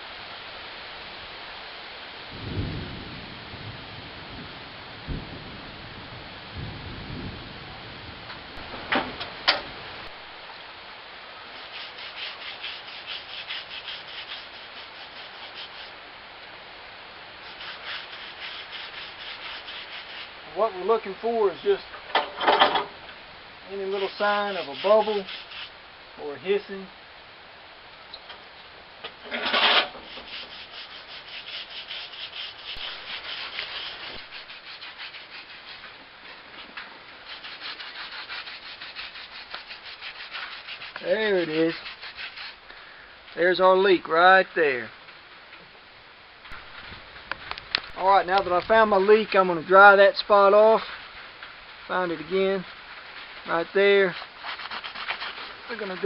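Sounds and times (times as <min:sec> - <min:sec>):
scrubbing soapy water on tire: 0:11.5 - 0:16.0, 0:17.4 - 0:21.8, 0:23.7 - 0:26.9, 0:29.5 - 0:42.7, 0:47.9 - 0:56.0.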